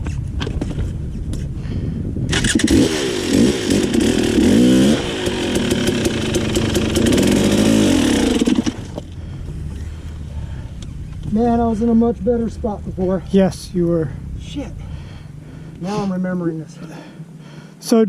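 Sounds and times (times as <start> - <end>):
dirt bike engine revving: 2.3 - 15.8.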